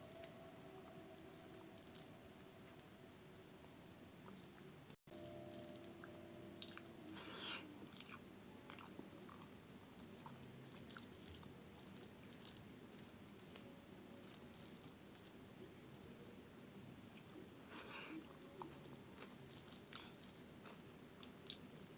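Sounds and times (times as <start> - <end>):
person chewing and lip smacking: 17.1 - 21.9.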